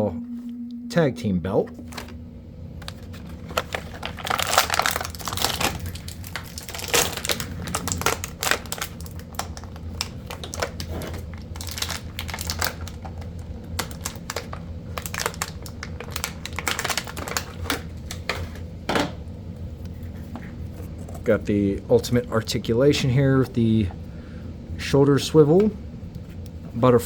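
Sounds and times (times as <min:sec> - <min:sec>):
plastic packaging crinkling: 0:02.8 - 0:18.6.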